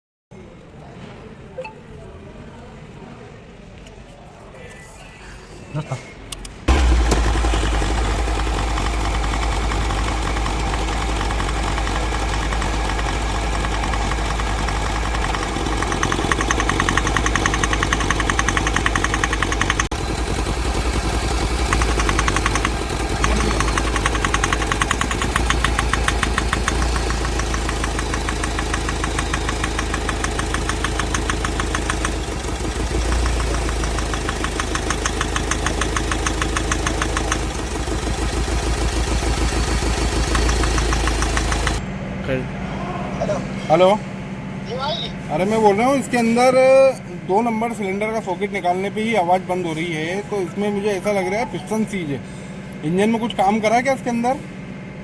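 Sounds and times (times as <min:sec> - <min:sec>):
rhythmic engine knock: 0:06.7 - 0:41.8
diesel engine idling: 0:06.7 - 0:55.0.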